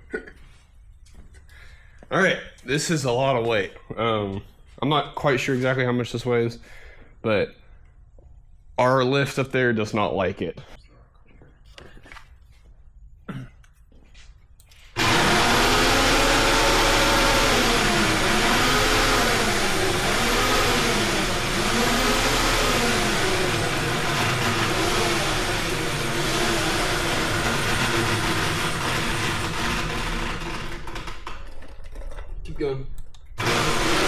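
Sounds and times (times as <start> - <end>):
electric hoist motor labouring: 15.0 - 31.3, 33.4 - 34.0.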